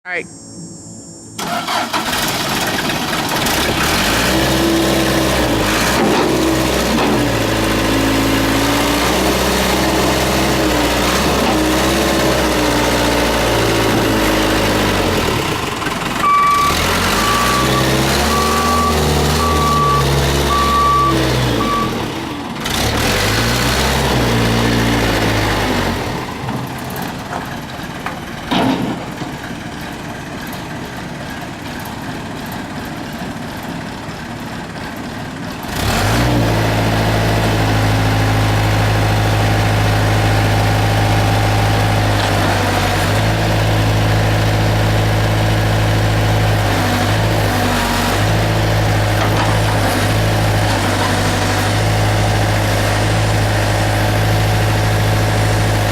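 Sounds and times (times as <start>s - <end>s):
reversing beeper: 0.0s - 2.4s, 16.2s - 22.1s
diesel engine running: 0.3s - 55.9s.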